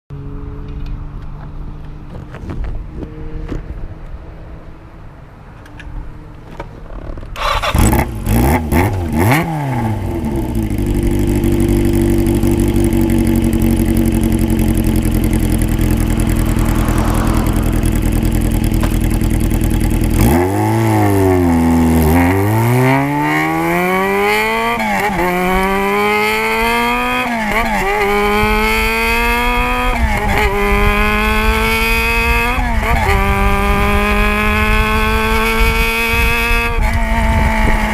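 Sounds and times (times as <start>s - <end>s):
engine exhaust revving and idling: 7.4s - 37.9s
vehicle accelerating through gears: 7.4s - 37.9s.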